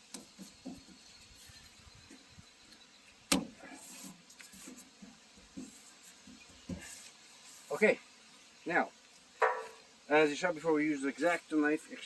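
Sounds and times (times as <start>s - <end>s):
handling noises: 9.4s - 9.9s.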